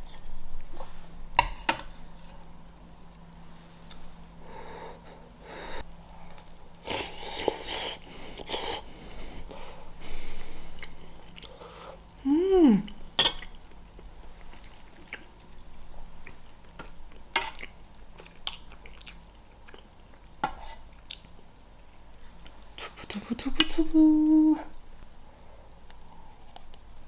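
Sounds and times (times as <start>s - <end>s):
person humming: 12.2s - 13.0s, 22.9s - 24.7s.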